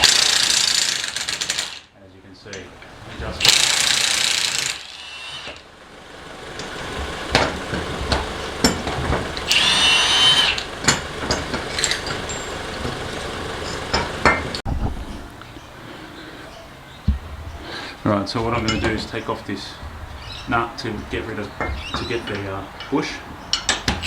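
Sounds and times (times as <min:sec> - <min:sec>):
power tool running: 0:00.0 - 0:01.8, 0:03.4 - 0:14.6.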